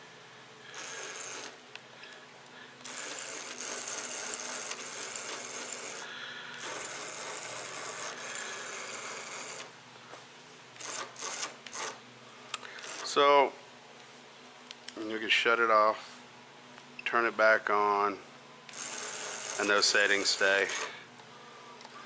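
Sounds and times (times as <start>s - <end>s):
electric motor running: 0.6s - 1.6s, 2.8s - 9.8s, 10.8s - 12.0s, 12.6s - 13.2s, 18.7s - 21.0s.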